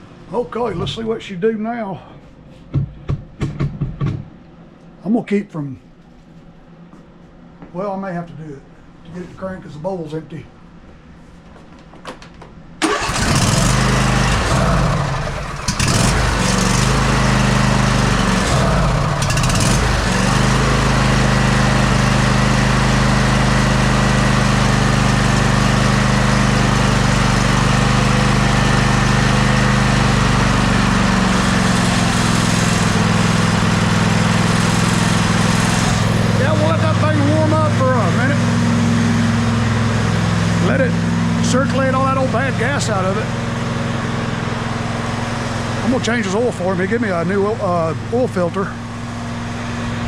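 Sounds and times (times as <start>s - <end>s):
riding mower engine running: 12.8s - 50.0s.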